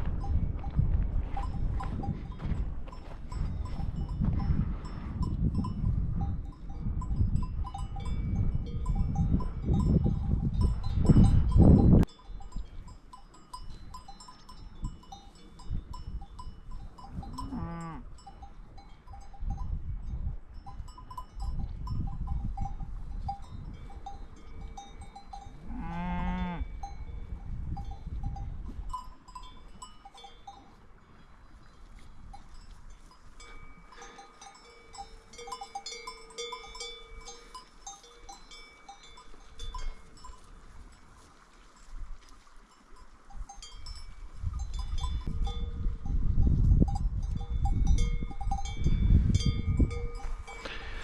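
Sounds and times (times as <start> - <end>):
cowbells clinking: 0.0 - 42.0, 42.6 - 51.0
cow mooing: 17.3 - 18.1, 25.6 - 26.7.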